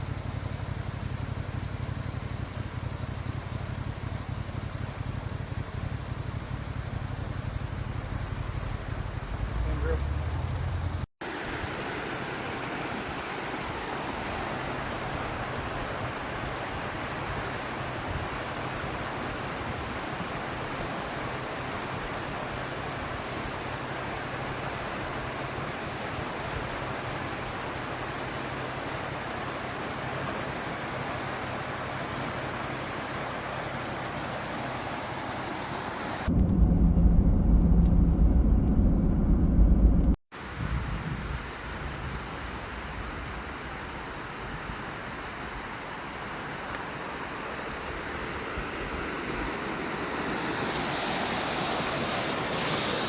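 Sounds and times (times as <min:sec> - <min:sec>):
deep muffled rumble: 0:07.9 - 0:11.1, 0:36.3 - 0:40.2
steady rushing noise: 0:36.2 - 0:45.7.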